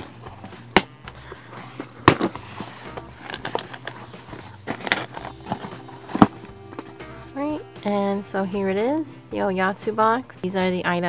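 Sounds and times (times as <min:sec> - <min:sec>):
cardboard box being opened: 0:01.4 - 0:06.9.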